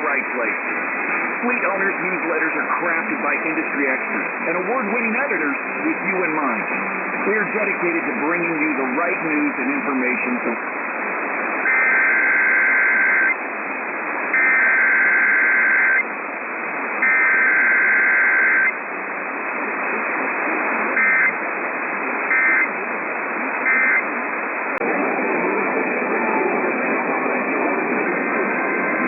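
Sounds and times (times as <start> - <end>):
radio static: 0.0 - 29.0
two-tone digital data bursts: 11.6 - 13.4, 14.4 - 16.0, 17.0 - 18.8, 21.0 - 21.4.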